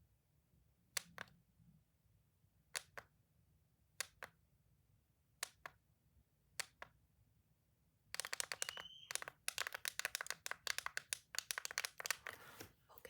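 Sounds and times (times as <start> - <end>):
toy clicking: 8.2 - 12.3.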